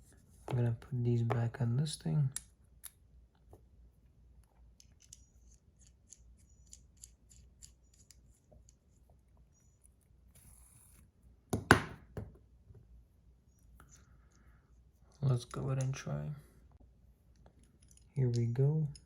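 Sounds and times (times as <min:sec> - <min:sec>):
small sharp metal clicks: 0:04.7 - 0:08.8
louder knocks: 0:11.6 - 0:12.3.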